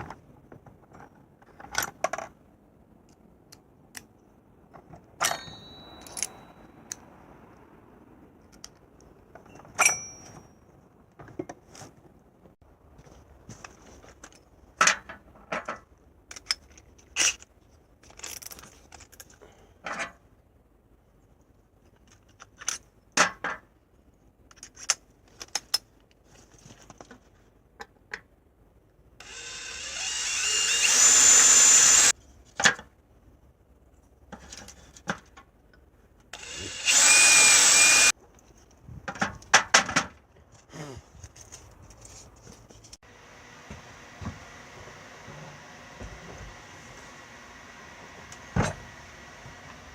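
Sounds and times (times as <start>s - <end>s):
tools clicking and knocking: 14.2s - 20.2s
power drill running: 29.2s - 32.1s, 36.4s - 38.1s.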